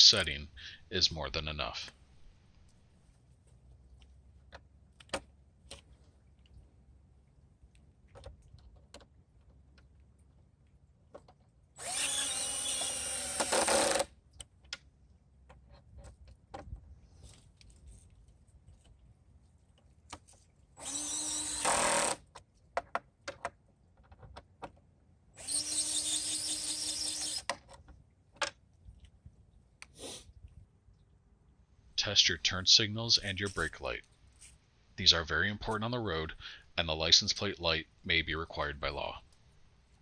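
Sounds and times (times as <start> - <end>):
cordless drill driving screws: 11.8 - 14.1, 20.8 - 22.2, 25.4 - 27.5.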